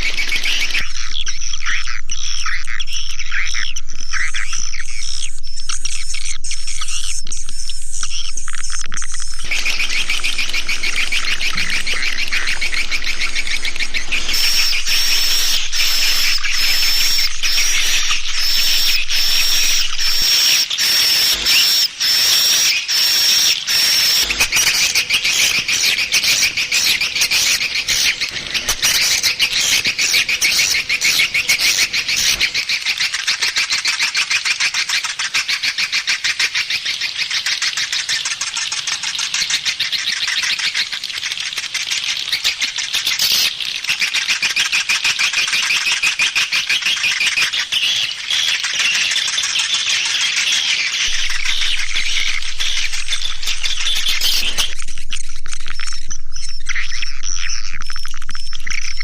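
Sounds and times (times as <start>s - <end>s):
thin high whistle: 0.0s - 32.6s, 51.1s - 59.0s
swiftlets chirping and twittering: 0.0s - 59.0s.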